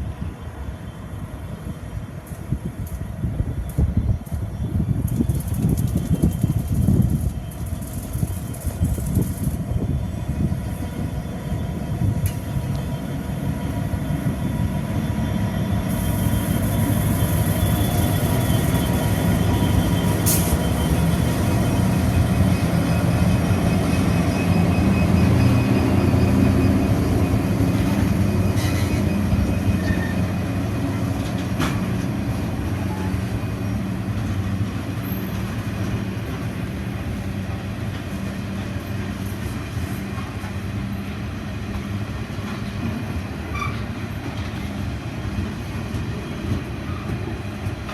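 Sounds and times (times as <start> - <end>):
locomotive engine drone: 0.0 - 47.9
wagons rolling on rails: 5.0 - 9.6.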